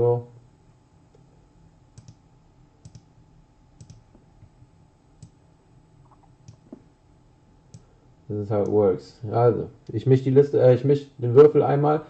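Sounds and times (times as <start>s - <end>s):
faint computer mouse clicks: 2.0s - 2.2s, 2.8s - 3.1s, 3.8s - 4.0s.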